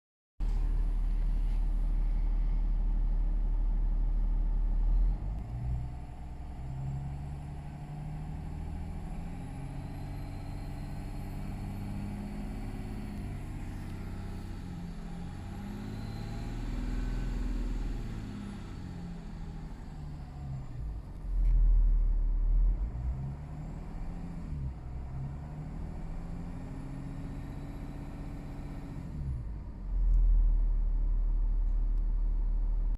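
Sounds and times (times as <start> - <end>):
car engine revving: 4.9 - 21.5.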